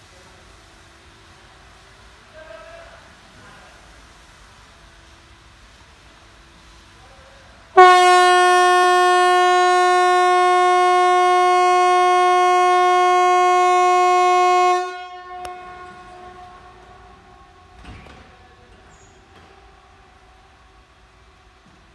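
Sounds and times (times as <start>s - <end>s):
warning siren steady tone: 7.8s - 17.8s.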